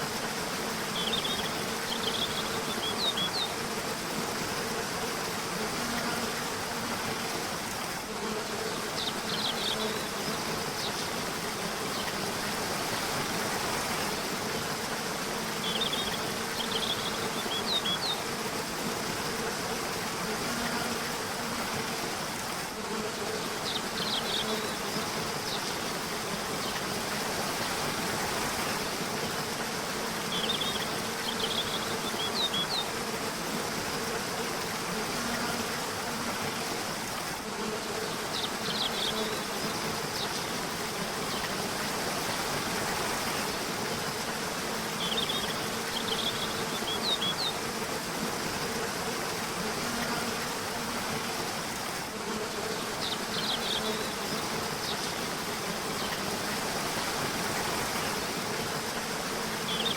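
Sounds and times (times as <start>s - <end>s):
songbirds chirping: 0.8s - 3.7s, 8.5s - 11.1s, 15.6s - 18.3s, 23.0s - 27.0s, 30.2s - 33.0s, 37.6s - 41.6s, 44.8s - 47.7s, 52.4s - 56.4s, 59.6s - 59.9s.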